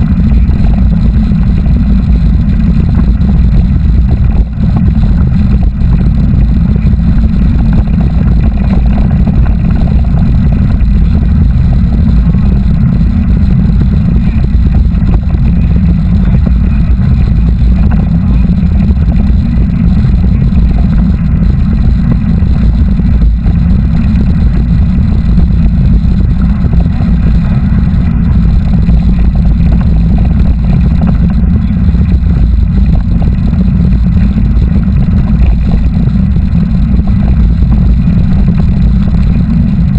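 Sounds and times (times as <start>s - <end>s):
wind rumble on microphone: 0.0s - 39.9s.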